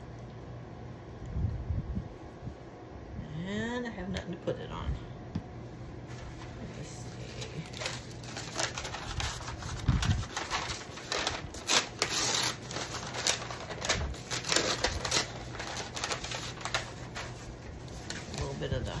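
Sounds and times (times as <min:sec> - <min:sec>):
paper rustling and crinkling: 0:06.0 - 0:19.0.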